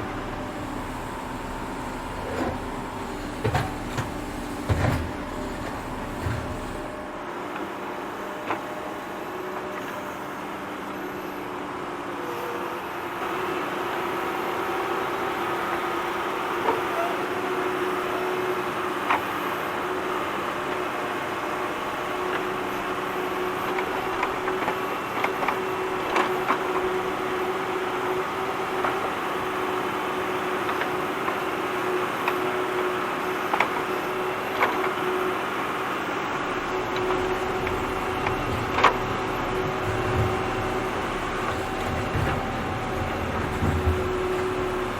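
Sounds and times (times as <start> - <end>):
tractor engine running: 0.0 - 7.2, 36.4 - 44.9
sharp knocks: 37.0 - 44.9.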